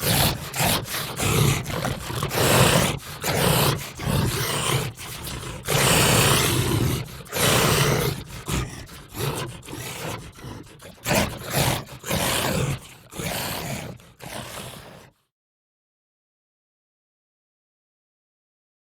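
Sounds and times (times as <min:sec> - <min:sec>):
monster roars and growls: 0:00.0 - 0:15.1.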